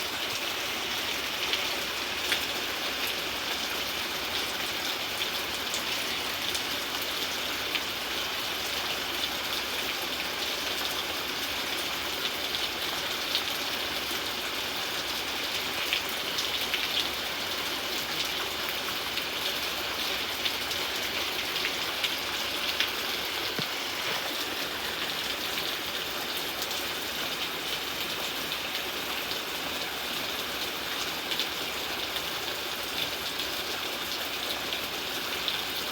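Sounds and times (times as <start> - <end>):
steady rain: 0.0 - 35.9
raindrops ticking on hard surface: 17.9 - 28.8.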